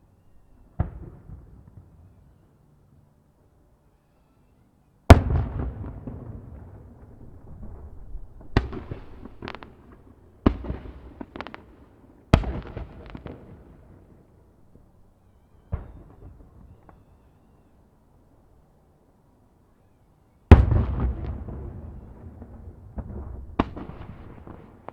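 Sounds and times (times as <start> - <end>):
firework pops and crackles: 8.4 - 13.7, 20.5 - 24.9.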